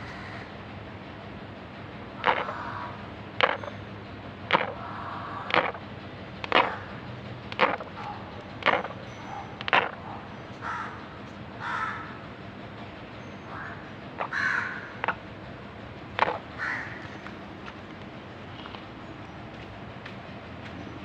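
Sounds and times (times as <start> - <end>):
harsh bird calls: 2.1 - 15.4, 16.0 - 19.6
animal grinding teeth: 7.5 - 9.0.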